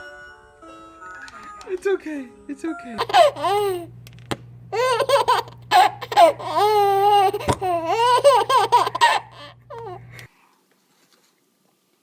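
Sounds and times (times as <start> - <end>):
baby laughing: 3.0 - 4.0, 4.7 - 10.3.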